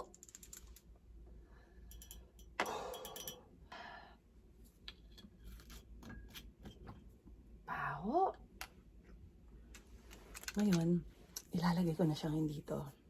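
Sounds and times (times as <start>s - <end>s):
clicks of small objects handled: 9.7s - 11.5s.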